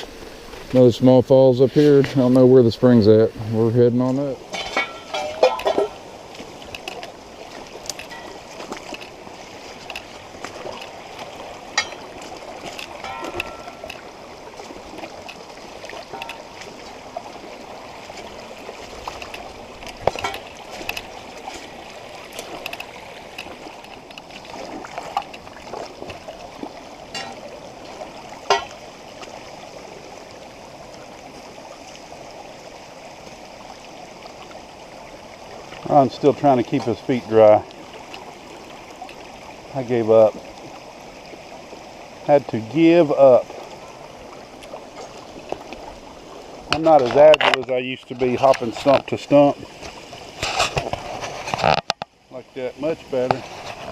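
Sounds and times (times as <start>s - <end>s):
stream running over rocks: 0.0s - 53.9s
sharp knocks and splashes: 4.0s - 29.5s, 46.5s - 52.2s.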